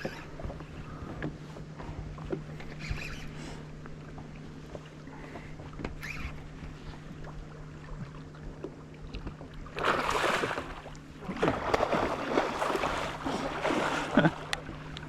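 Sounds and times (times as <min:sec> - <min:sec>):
steady low hum: 0:00.0 - 0:15.0
fish thrashing and splashing: 0:09.7 - 0:14.9.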